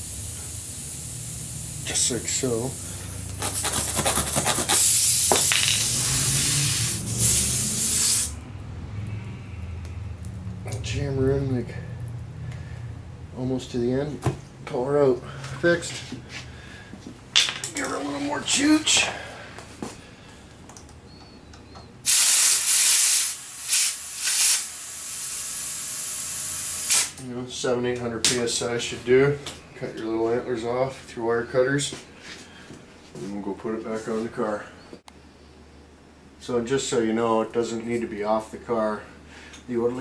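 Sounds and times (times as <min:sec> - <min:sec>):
air hissing out of tire: 0:00.0 - 0:03.9, 0:04.6 - 0:08.4, 0:22.0 - 0:27.2.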